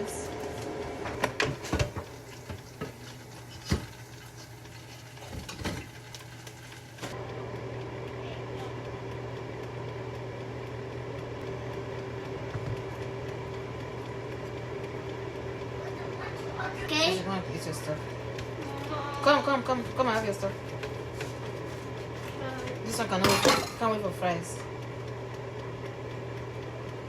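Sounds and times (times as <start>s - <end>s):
kitchen appliance humming: 0.0s - 27.0s
kitchen knocks and clatters: 1.0s - 4.0s, 5.2s - 5.9s, 23.0s - 23.9s.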